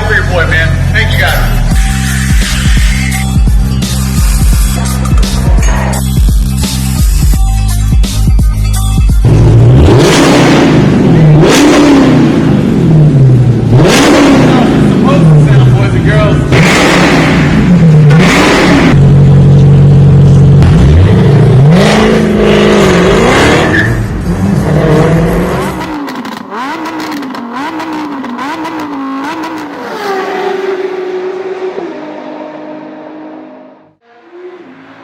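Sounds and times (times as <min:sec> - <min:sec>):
car engine revving: 0:09.2 - 0:35.0.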